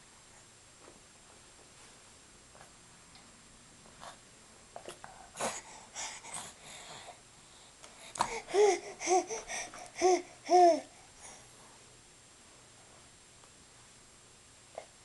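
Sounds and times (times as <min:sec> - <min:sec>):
baby breathy huffs: 0:05.3 - 0:07.2, 0:08.0 - 0:11.5
baby cooing: 0:08.3 - 0:10.9.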